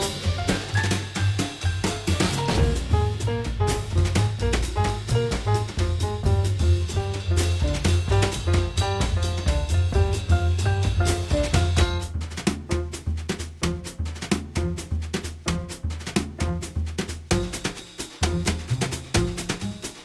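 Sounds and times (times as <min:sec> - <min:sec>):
drum kit: 0:00.0 - 0:20.0
upbeat jazz music: 0:00.0 - 0:20.0
walking bass line: 0:02.5 - 0:12.2.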